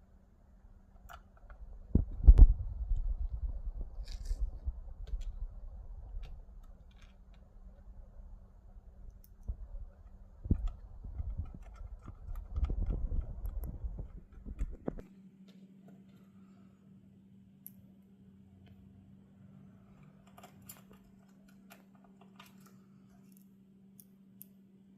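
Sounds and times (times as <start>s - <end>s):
steady low hum: 0.0s - 24.9s
low rumbling handling noise: 0.6s - 15.1s
small parts clicking and knocking: 4.0s - 15.1s, 19.8s - 24.6s.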